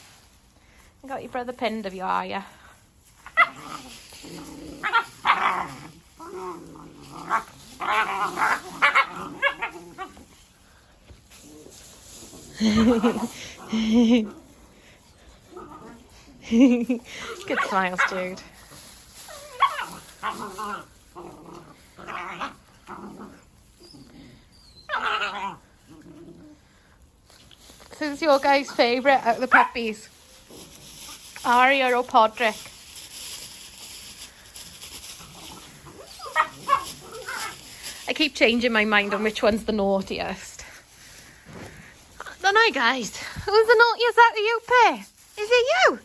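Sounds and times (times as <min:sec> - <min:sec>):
puppies growling: 0:03.2 - 0:27.3, 0:28.2 - 0:42.4
puppies barking: 0:07.3 - 0:10.0, 0:29.3 - 0:29.9, 0:35.8 - 0:37.6.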